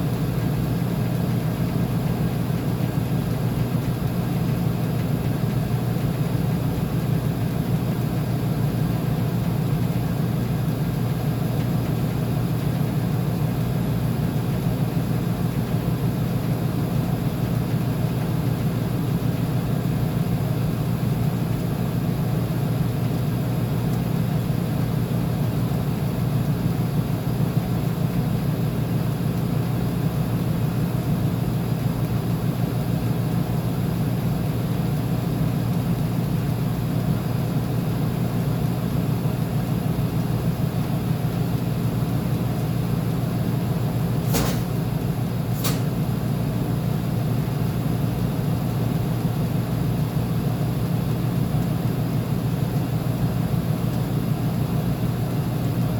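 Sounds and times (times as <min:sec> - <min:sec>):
washing machine humming: 0:00.0 - 0:55.9
short clicks: 0:45.5 - 0:46.0.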